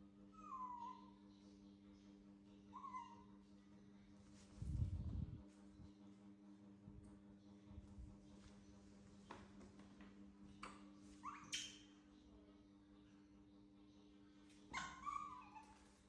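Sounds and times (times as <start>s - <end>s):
steady low hum: 0.0s - 16.0s
young pet whimpering squeaks: 0.3s - 1.2s, 11.2s - 11.9s, 14.7s - 15.9s.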